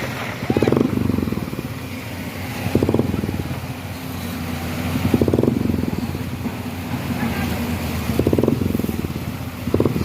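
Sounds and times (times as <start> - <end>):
motorcycle engine revving: 0.0 - 1.8, 2.6 - 3.7, 5.0 - 6.5, 8.1 - 10.0.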